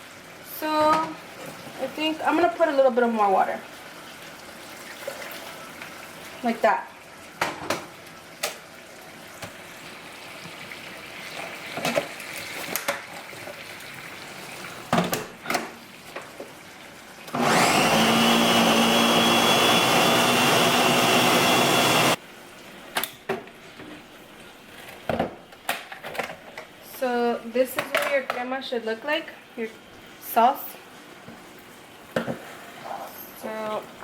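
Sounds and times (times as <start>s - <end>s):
countertop blender running: 17.3s - 22.2s.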